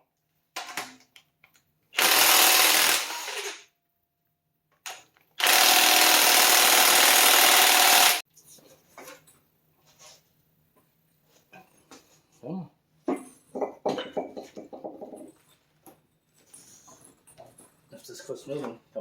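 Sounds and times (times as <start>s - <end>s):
impact wrench bursts: 2.0s - 3.7s, 5.4s - 8.2s.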